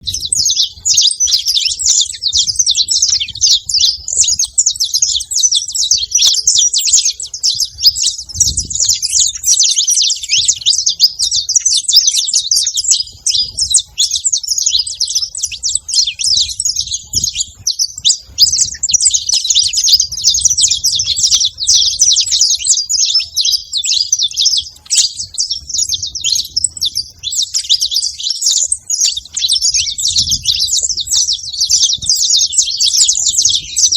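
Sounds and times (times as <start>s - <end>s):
finch singing high chirps: 0.0s - 33.9s.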